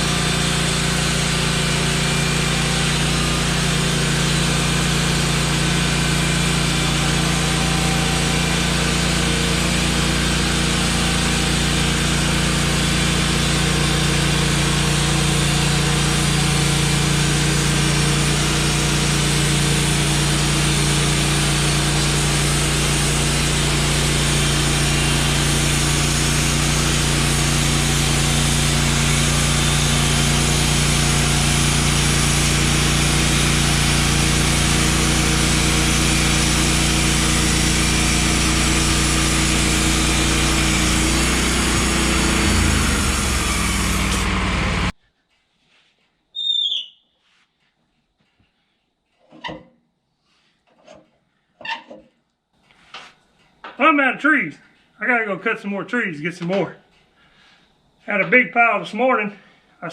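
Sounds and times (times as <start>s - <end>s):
band blade sawing log: 0.0s - 45.0s
sawmill engine running: 0.0s - 45.0s.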